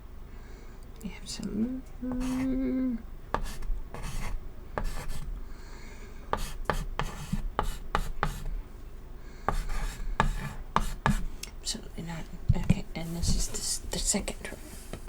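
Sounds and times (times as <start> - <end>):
chalk scratching on chalkboard: 2.1 - 2.5, 3.4 - 5.3, 6.4 - 8.5, 9.5 - 11.3, 12.6 - 13.8
chalk tapping on chalkboard: 3.3 - 5.3, 6.3 - 8.5, 9.5 - 11.3, 12.5 - 13.8.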